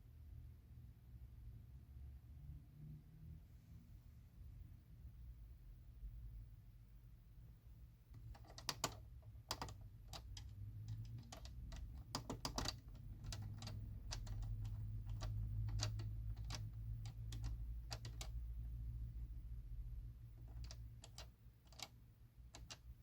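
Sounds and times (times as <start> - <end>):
washing machine control clicks: 8.2 - 18.4, 20.5 - 21.9, 22.5 - 22.8.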